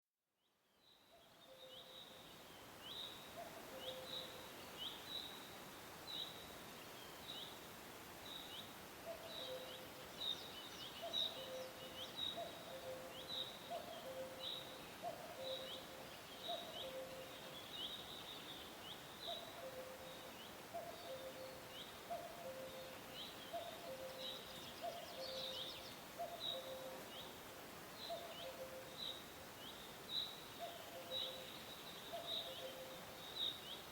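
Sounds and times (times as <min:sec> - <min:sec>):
faint forest hiss: 0:00.2 - 0:33.9
cuckoo calling: 0:11.0 - 0:17.4, 0:19.3 - 0:27.1, 0:28.1 - 0:29.0, 0:30.6 - 0:33.0.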